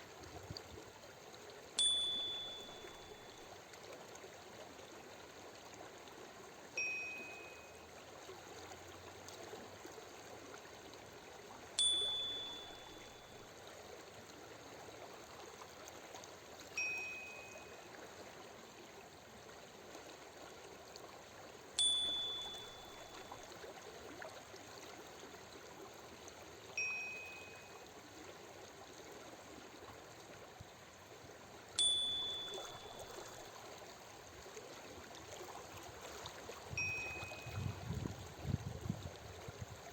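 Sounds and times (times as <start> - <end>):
running water stream: 0.0 - 39.9
soft two-tone chime: 1.8 - 3.6, 6.8 - 7.9, 11.8 - 13.6, 16.8 - 18.0, 21.8 - 23.7, 26.8 - 28.0, 31.8 - 33.6, 36.7 - 37.9.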